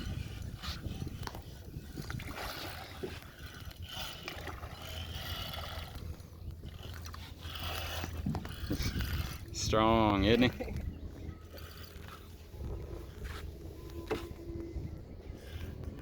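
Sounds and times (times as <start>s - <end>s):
fishing reel scrapes and clicks: 0.0s - 10.6s, 11.4s - 14.0s
wind rumbling on microphone: 0.0s - 16.0s.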